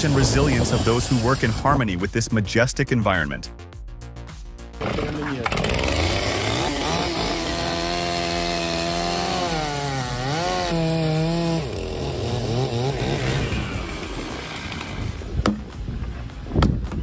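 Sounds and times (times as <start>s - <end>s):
chainsaw engine running: 0.0s - 1.7s, 4.8s - 15.4s.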